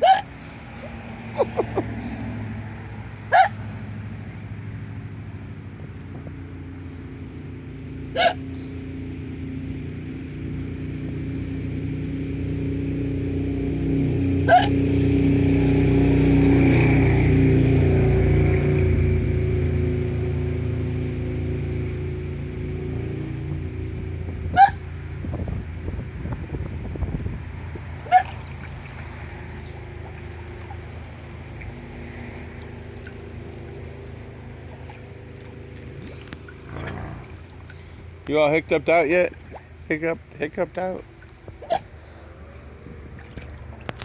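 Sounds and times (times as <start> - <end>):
woman hiccupping: 0.0 - 2.0, 8.2 - 8.4, 14.5 - 14.8
low motor hum: 0.0 - 44.0.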